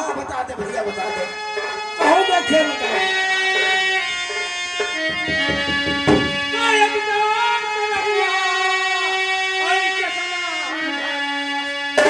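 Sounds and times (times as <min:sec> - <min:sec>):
keyboard melody: 0:00.8 - 0:12.0
drum strokes: 0:03.6 - 0:06.8.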